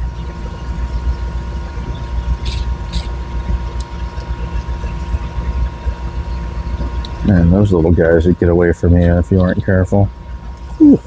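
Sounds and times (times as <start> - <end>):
faint hum: 0.0 - 11.0.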